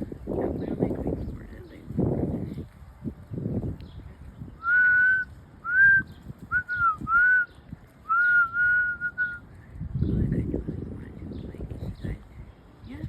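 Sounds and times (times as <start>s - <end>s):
person whistling short notes: 4.6s - 7.5s, 8.1s - 9.4s.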